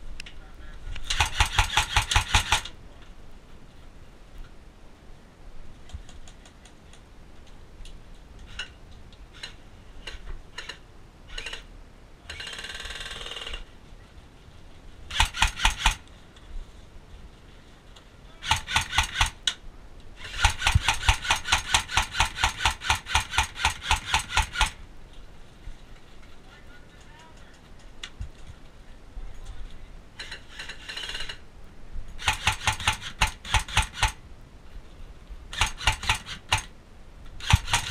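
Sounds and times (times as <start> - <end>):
airsoft guns firing: 1.0 - 2.8, 15.1 - 16.1, 18.4 - 19.6, 20.2 - 24.8, 32.2 - 34.2, 35.5 - 36.7, 37.4 - 37.9.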